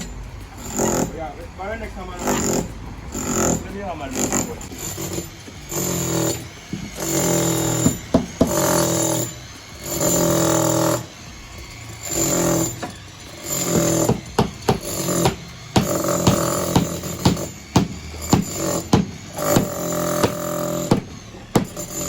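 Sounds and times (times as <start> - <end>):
sharp percussive hits: 13.6 - 21.9.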